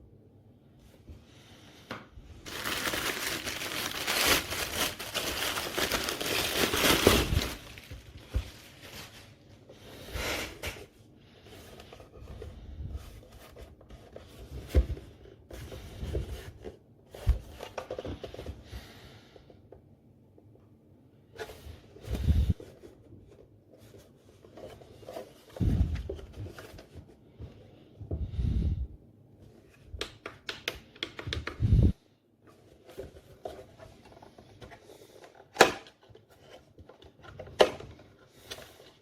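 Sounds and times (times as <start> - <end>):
packaging crinkling and rustling: 2.4 - 9.6.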